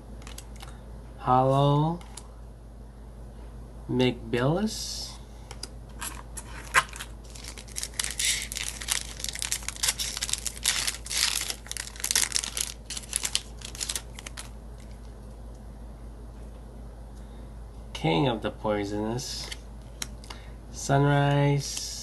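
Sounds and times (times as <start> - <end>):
foil wrapper tearing and crinkling: 6.0 - 15.0.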